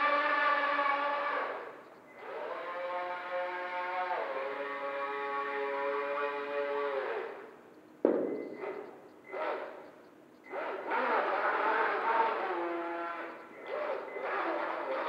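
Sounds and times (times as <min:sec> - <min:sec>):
model boat motor whining: 0:10.5 - 0:15.0.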